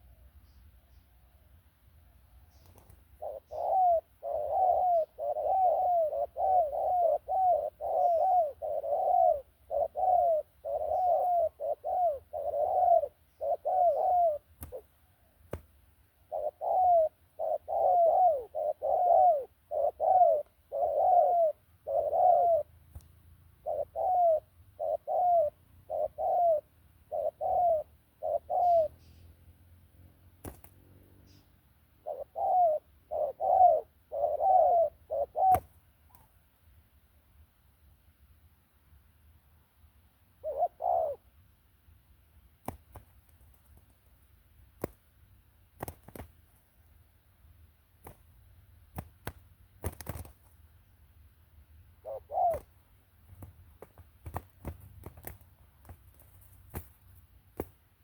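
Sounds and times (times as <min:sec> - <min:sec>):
dove cooing: 0:02.5 - 0:15.3, 0:16.2 - 0:22.9, 0:23.5 - 0:29.3, 0:31.1 - 0:36.3, 0:40.3 - 0:41.4, 0:51.7 - 0:55.7.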